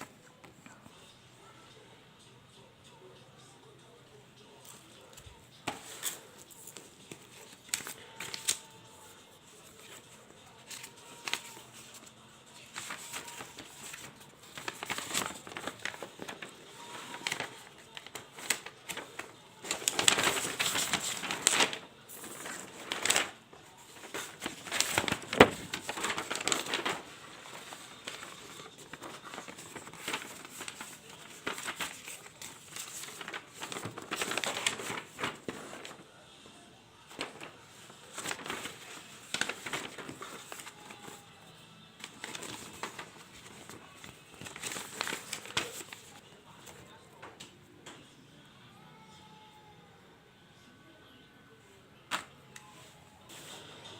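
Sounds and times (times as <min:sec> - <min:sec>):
plastic and cardboard crinkling: 0:05.2 - 0:36.0, 0:37.1 - 0:47.0.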